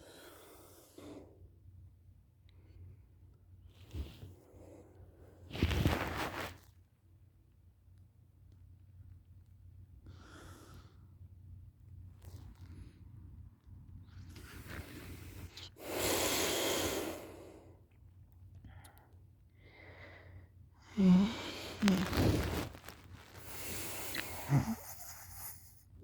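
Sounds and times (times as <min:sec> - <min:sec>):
person snoring: 0:20.9 - 0:22.7, 0:23.4 - 0:25.7.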